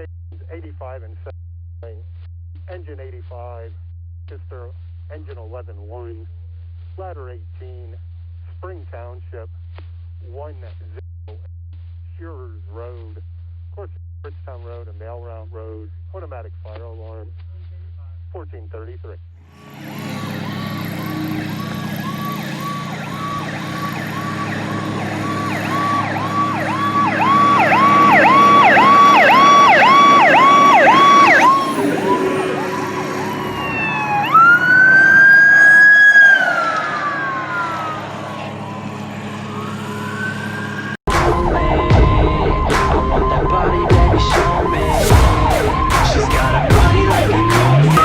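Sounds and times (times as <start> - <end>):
fire engine siren: 19.6 - 48.0
large engine running: 19.6 - 48.0.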